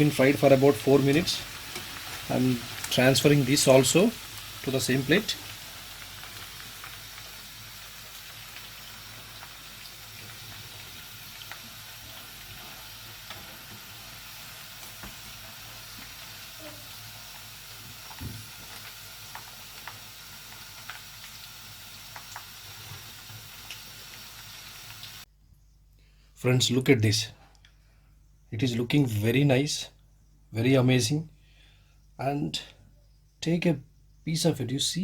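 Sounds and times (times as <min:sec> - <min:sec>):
food deep-frying in hot oil: 0:00.0 - 0:25.3.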